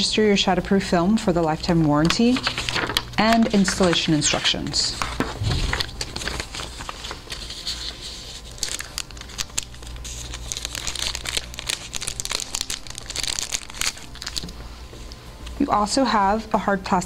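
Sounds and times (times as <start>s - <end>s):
packaging crinkling: 5.0s - 14.6s.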